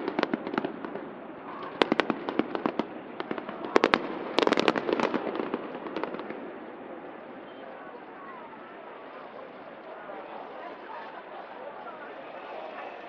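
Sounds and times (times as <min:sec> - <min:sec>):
fireworks bangs and crackles: 0:00.0 - 0:07.2.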